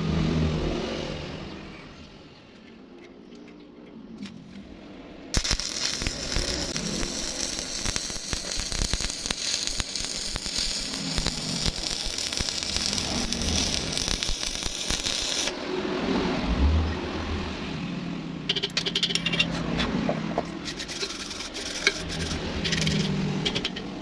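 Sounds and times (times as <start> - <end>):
welding arc crackling and popping: 5.4 - 15.6.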